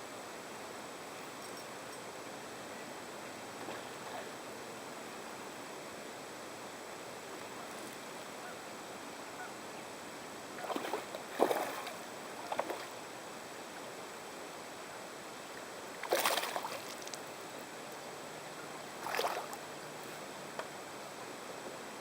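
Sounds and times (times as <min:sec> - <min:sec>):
faint steady hiss: 0:00.0 - 0:22.0
water splashing at kayak: 0:10.6 - 0:13.0, 0:16.0 - 0:17.1, 0:19.0 - 0:19.6.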